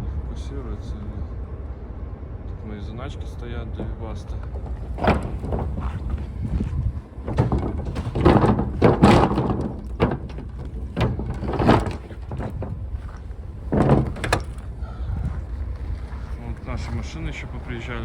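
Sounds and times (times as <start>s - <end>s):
strong wind rumble: 0.0s - 18.0s
door knocks and thuds: 4.6s - 14.6s.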